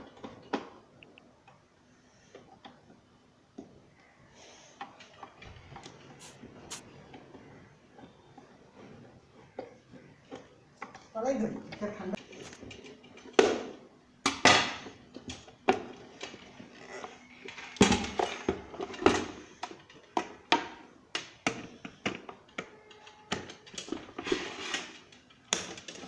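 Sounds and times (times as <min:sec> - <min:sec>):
clicks and knocks of parts: 0:09.6 - 0:16.7, 0:17.4 - 0:26.0.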